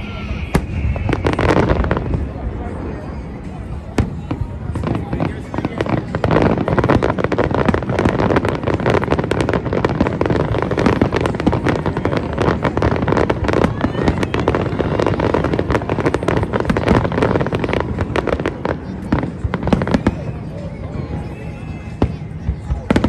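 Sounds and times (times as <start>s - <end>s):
fireworks bangs and crackles: 0.0s - 23.0s.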